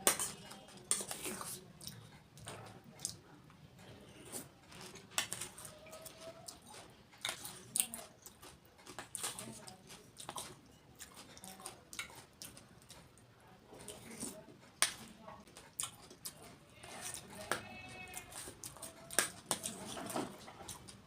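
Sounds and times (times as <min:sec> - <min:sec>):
crisp food crunching: 0:04.2 - 0:13.2.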